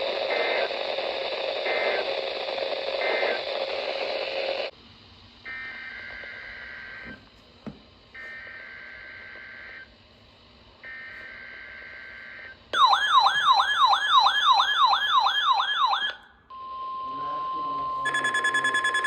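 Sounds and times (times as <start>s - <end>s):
electronic siren alarm warbling: 0.0s - 4.7s, 10.8s - 16.6s, 17.2s - 19.0s
steady warning alarm tone: 0.0s - 4.7s, 5.4s - 7.2s, 8.1s - 9.9s, 10.8s - 19.0s
digital data warble: 17.1s - 19.0s.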